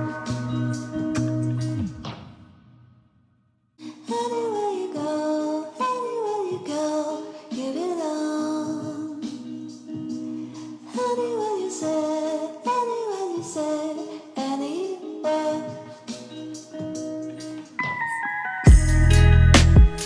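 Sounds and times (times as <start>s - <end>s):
instrumental backing music: 0.0s - 2.4s, 4.1s - 20.0s
female vocal melody: 3.8s - 16.8s.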